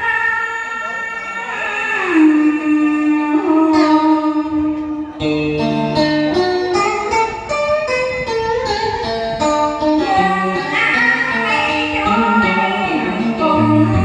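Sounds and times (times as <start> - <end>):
plucked guitar melody: 1.9 - 14.0.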